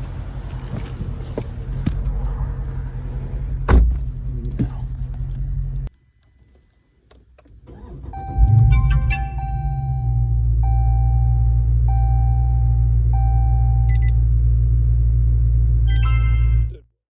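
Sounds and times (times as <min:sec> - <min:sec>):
car engine hum: 0:00.0 - 0:05.9, 0:07.7 - 0:16.8
steady high tones: 0:08.3 - 0:11.5.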